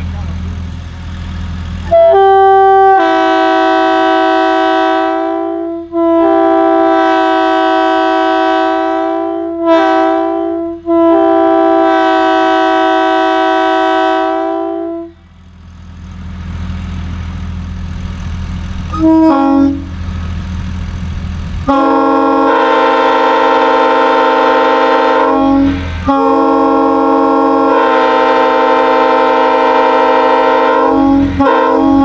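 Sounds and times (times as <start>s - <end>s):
locomotive air horn blasts: 1.8s - 15.3s, 18.9s - 20.2s, 21.6s - 32.0s
steady low hum: 15.0s - 32.0s.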